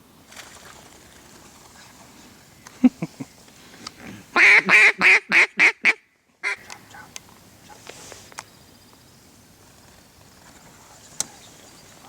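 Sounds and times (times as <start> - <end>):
duck quacking: 4.4 - 7.1.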